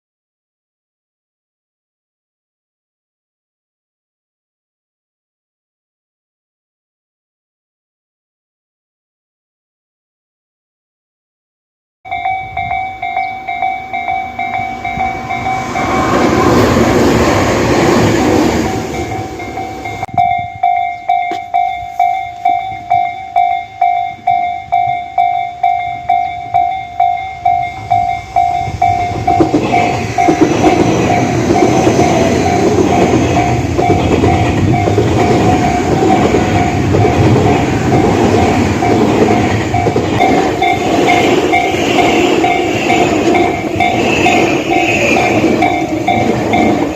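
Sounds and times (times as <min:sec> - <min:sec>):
level-crossing bell clanging: 0:12.1 - 0:46.9
train rumbling and rattling: 0:12.1 - 0:46.9
rush of noise: 0:14.4 - 0:20.0.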